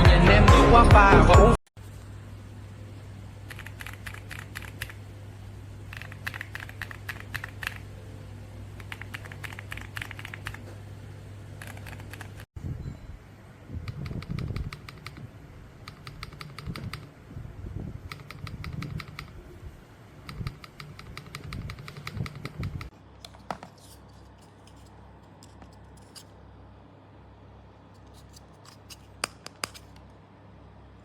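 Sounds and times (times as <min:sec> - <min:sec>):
mechanical keyboard typing: 0:03.5 - 0:05.0, 0:05.9 - 0:07.8, 0:08.8 - 0:10.6, 0:11.6 - 0:12.5, 0:13.8 - 0:15.2, 0:15.8 - 0:17.1, 0:18.1 - 0:19.4, 0:20.2 - 0:22.9.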